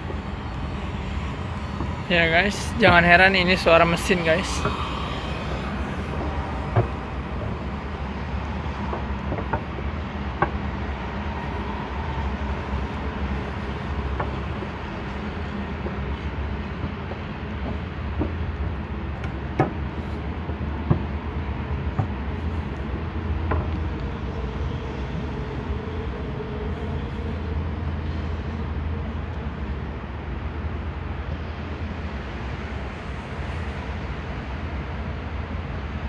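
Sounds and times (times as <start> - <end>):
machine humming and rushing: 0.0 - 20.4.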